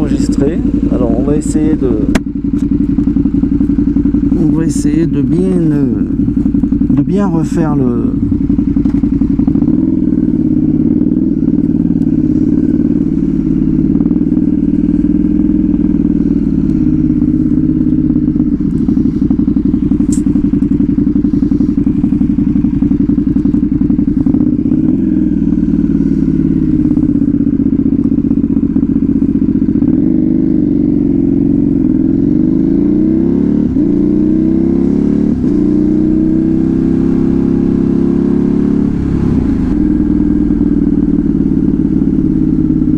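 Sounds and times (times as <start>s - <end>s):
loud motorcycle exhaust: 0.0s - 42.9s.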